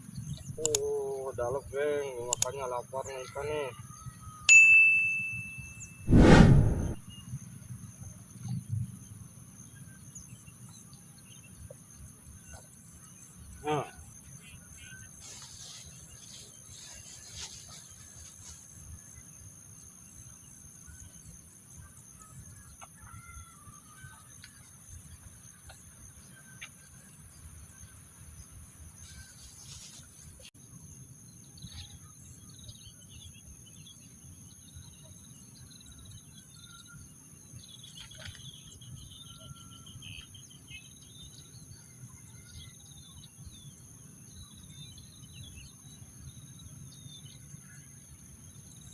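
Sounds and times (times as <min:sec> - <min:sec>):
high insect drone: 0:07.1 - 0:37.8.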